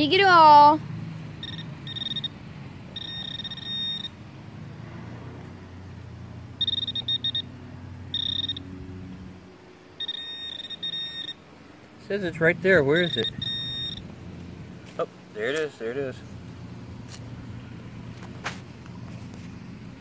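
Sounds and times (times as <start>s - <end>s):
pinpointer probe beeping: 1.4s - 4.2s, 6.6s - 8.8s, 10.0s - 11.4s, 13.0s - 14.1s.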